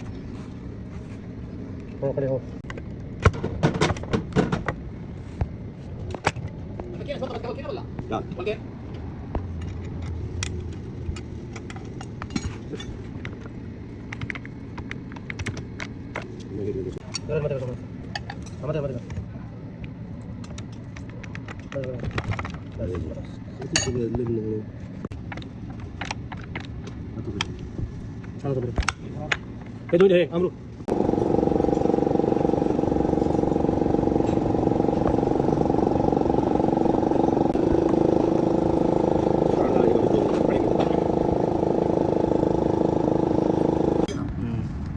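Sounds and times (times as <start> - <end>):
engine running with even pulsing: 30.9 - 44.1.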